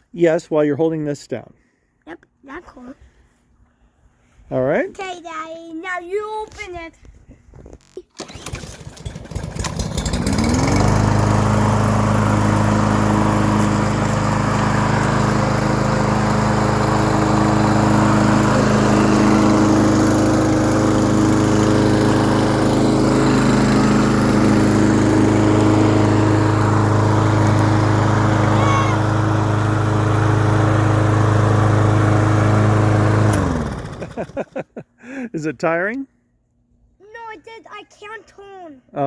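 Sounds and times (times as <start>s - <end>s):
lawn mower engine starting and running: 8.0s - 35.3s.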